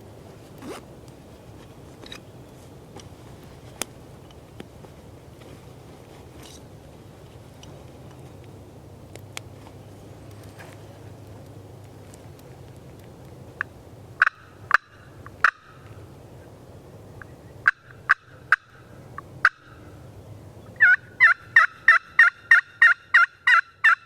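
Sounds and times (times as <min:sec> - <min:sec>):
turkey yelps and clucks: 0:14.2 - 0:15.9, 0:17.6 - 0:19.9, 0:20.8 - 0:24.0.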